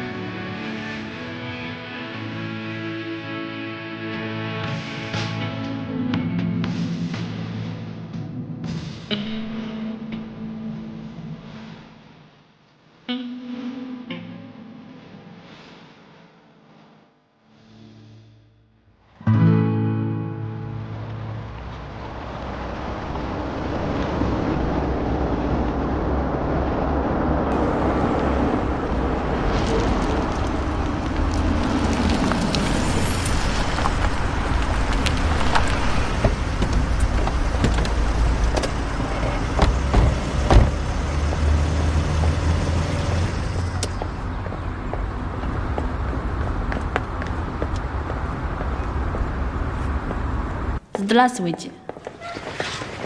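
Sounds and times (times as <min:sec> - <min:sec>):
background music: 0:00.0 - 0:12.2, 0:19.2 - 0:21.5
vehicle engine and road rumble: 0:20.5 - 0:51.2.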